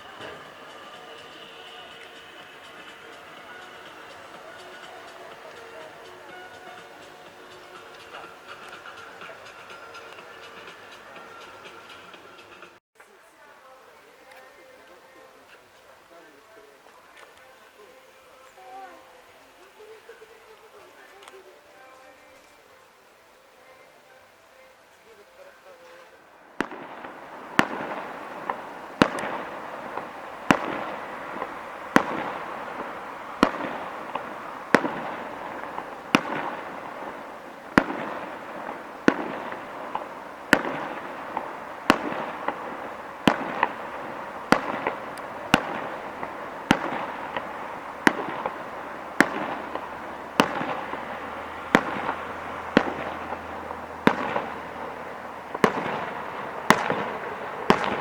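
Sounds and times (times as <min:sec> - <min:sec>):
fireworks bangs: 0:00.0 - 0:12.8, 0:25.6 - 0:58.0
continuous noise: 0:00.0 - 0:58.0.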